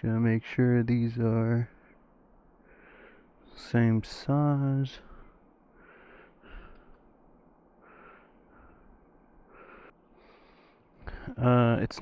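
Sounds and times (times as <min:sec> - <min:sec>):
soft breaths through the nose: 0:01.7 - 0:03.7, 0:05.0 - 0:07.2, 0:07.8 - 0:11.4.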